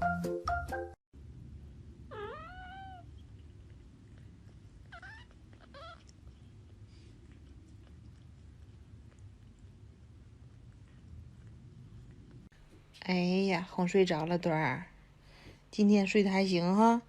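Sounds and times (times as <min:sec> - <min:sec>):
low room hum: 0:01.2 - 0:17.0
cat meowing: 0:02.1 - 0:03.2, 0:04.8 - 0:06.1.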